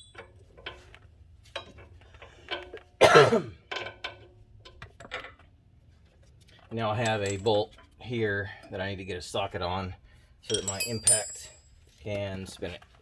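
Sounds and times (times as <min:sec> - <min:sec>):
person coughing: 0:03.0 - 0:03.6
metal hand tools clinking: 0:07.1 - 0:07.6, 0:10.5 - 0:11.8.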